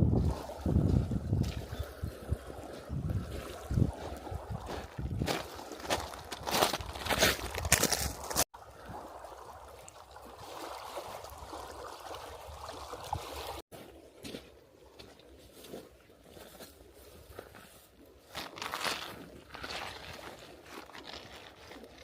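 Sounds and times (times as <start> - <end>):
water trickling and gurgling: 0.0 - 6.4, 8.6 - 13.9.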